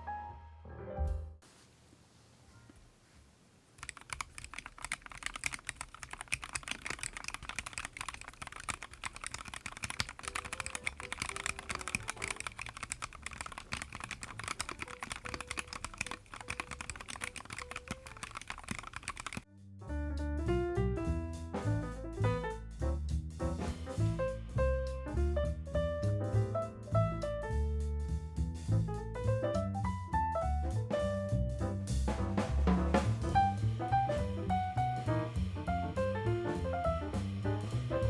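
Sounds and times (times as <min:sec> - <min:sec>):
mechanical keyboard typing: 0:03.8 - 0:19.5.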